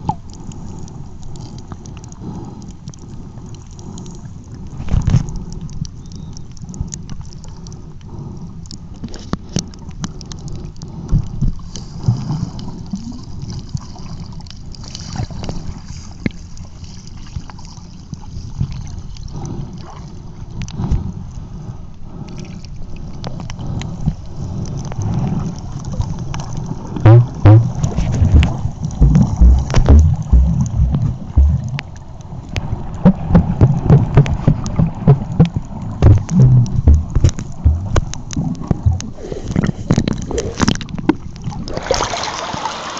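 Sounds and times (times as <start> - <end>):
sea water sloshing and lapping: 0.0 - 42.9
wind rumbling on microphone: 23.6 - 41.7.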